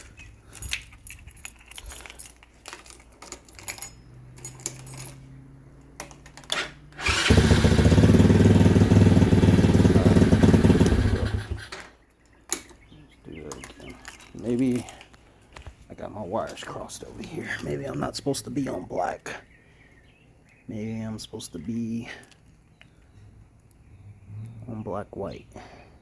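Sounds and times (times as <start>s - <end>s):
motorcycle electric starter cranking: 6.1s - 12.0s.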